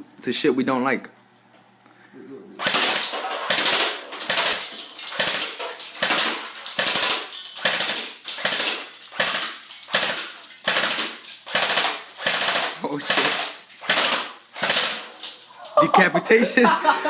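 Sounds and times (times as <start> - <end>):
airsoft rifle firing bursts: 2.6 - 15.4.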